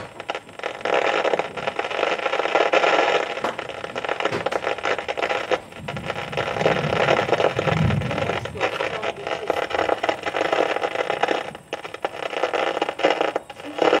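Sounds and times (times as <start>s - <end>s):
heavy rain: 0.0s - 14.0s
low thunder rumble: 3.2s - 11.8s.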